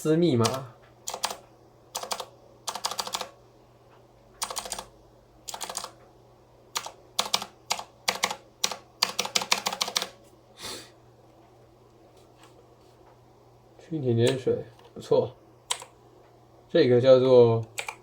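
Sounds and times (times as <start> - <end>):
mechanical keyboard clicking: 0.4 - 1.4, 2.0 - 3.3, 4.4 - 4.9, 5.5 - 6.0, 6.8 - 10.2, 15.7 - 15.9, 17.7 - 18.0.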